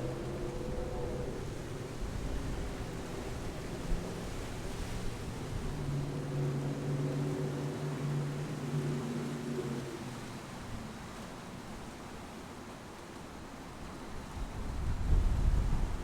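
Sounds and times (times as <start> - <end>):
wind noise on microphone: 14.2 - 16.0.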